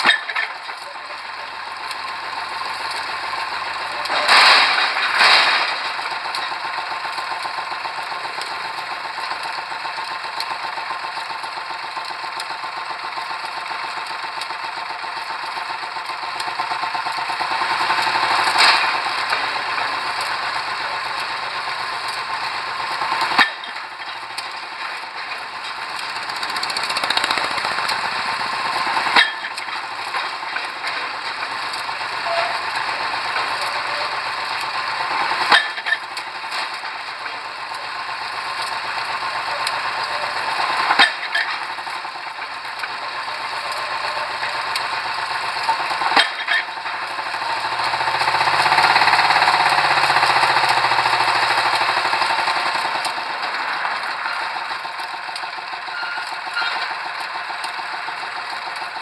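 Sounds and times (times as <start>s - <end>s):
engine: 0.0s - 59.0s
fast machine rattle: 0.0s - 59.0s.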